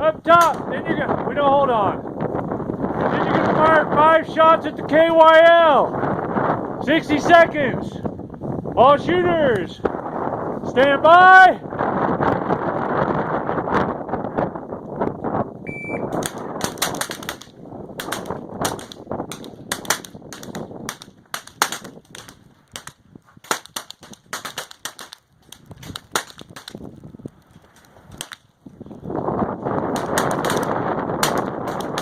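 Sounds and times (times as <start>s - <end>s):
wind buffeting microphone: 0.0s - 32.0s
short electronic beep: 15.7s - 16.1s
rifles firing sharp shots: 16.1s - 26.9s, 29.9s - 32.0s.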